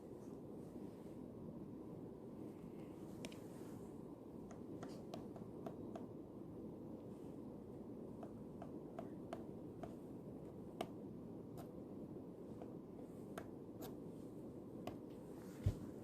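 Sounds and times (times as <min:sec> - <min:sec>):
low room hum: 0:00.0 - 0:16.0
pen clicking on paper: 0:12.6 - 0:14.0.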